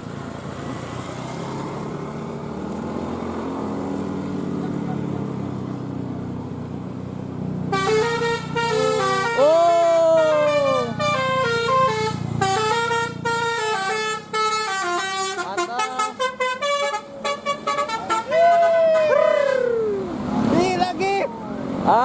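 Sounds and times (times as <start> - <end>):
bus engine running: 0.0 - 22.0
musical bus horn tune: 7.7 - 18.8.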